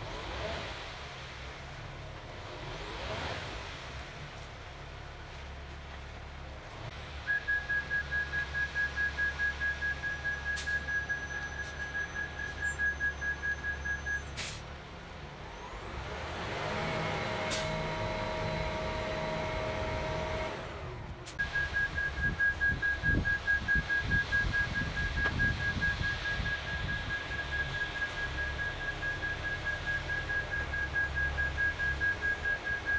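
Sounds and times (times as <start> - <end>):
truck backup alarm beeping: 6.9 - 14.6, 16.9 - 20.7, 21.3 - 32.9.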